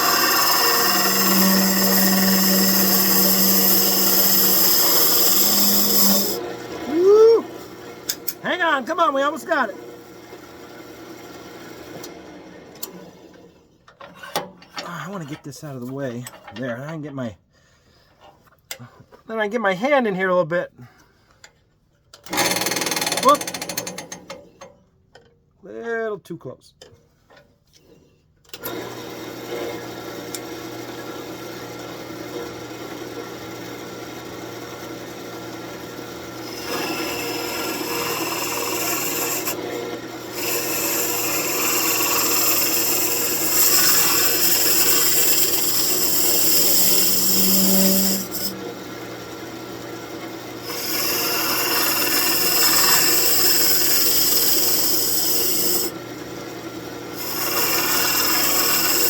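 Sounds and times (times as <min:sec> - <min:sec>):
turning tool scraping wood: 0:00.0 - 0:06.4, 0:36.4 - 0:49.0, 0:50.6 - 0:56.4, 0:57.2 - 0:59.0
wood lathe humming: 0:00.0 - 0:08.2, 0:28.6 - 0:59.0.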